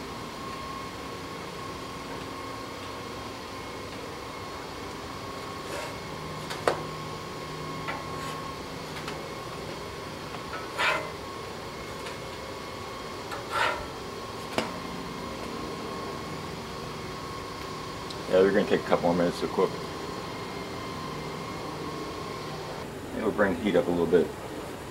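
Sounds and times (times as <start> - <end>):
short noisy scrapes: 10.7 - 11.2, 13.5 - 13.9.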